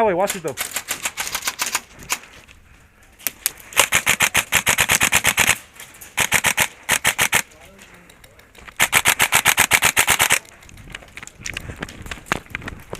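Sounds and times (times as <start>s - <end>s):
airsoft guns firing bursts: 3.8s - 5.6s, 6.2s - 7.5s, 8.8s - 10.4s.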